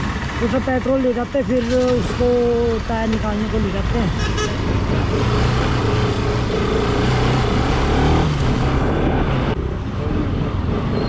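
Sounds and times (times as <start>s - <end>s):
motorcycle engine running: 0.0s - 7.9s
road and wind noise: 0.0s - 11.0s.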